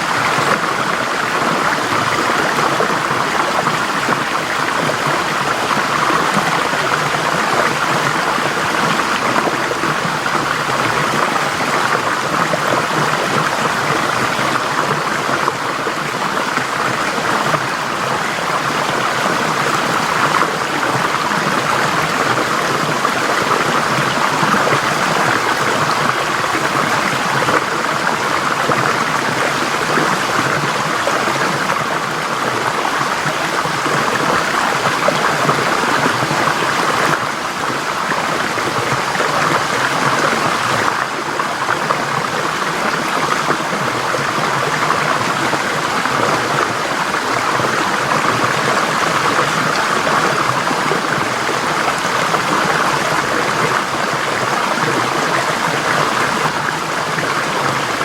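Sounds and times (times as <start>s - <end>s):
stream flowing over rocks: 0.0s - 58.0s.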